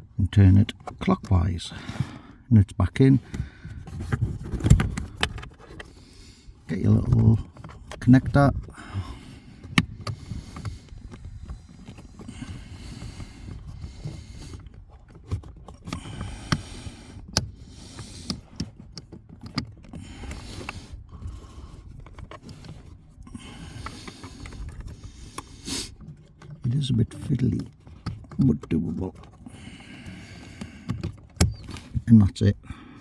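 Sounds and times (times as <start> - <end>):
rustling handling noises: 0.0 - 33.0
sharp plastic clicks: 30.1 - 32.0.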